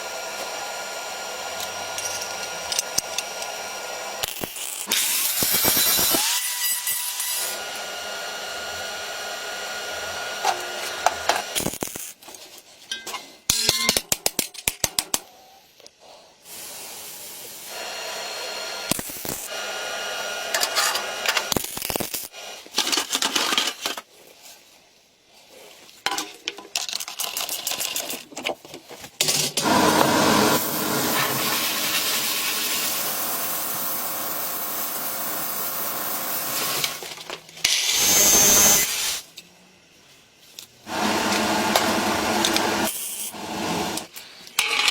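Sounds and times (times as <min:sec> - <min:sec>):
power tool whirring: 0:00.0 - 0:12.0, 0:17.4 - 0:22.4, 0:29.6 - 0:39.2, 0:40.9 - 0:44.9.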